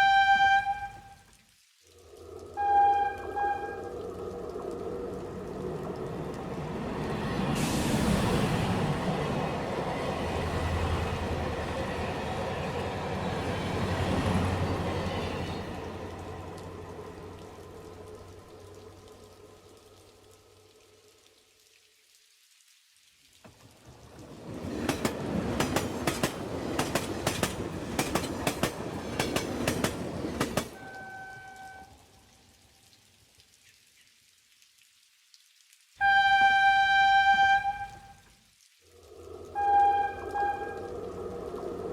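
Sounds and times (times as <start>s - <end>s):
train rumbling along rails: 2.1s - 19.6s, 23.5s - 31.8s, 39.0s - 41.9s
train wheels clacking over rail joints: 24.5s - 30.8s.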